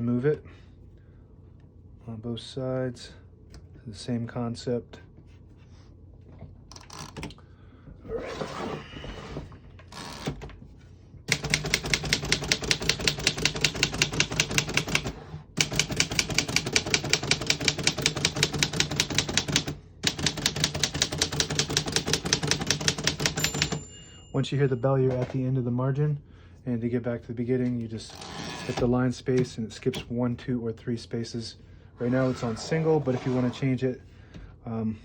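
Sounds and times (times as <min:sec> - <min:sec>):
typewriter keystrokes: 0:11.3 - 0:23.8.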